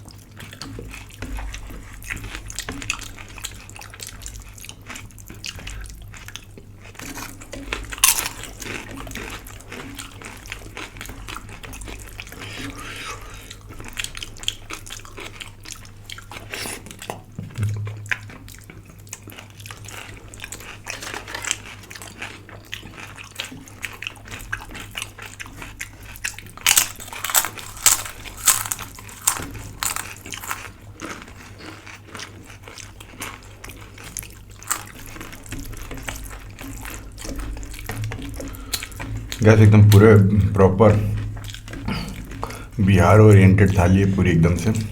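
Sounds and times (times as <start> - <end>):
crunchy chewing: 0.0 - 40.2, 40.8 - 44.9
faint low hum: 17.4 - 18.7, 37.7 - 44.9.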